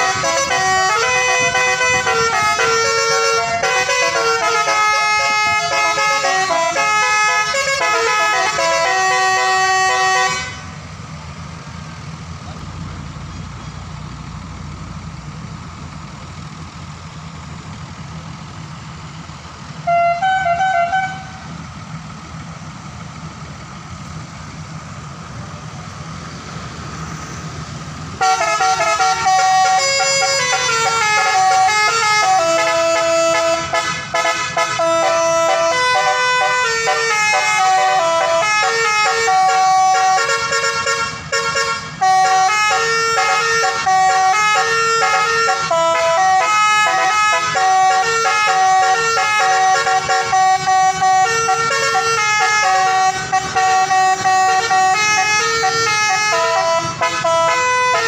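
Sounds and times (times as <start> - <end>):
multi-tone horn playing a tune: 0.0 - 10.8, 19.8 - 21.4, 28.2 - 58.0.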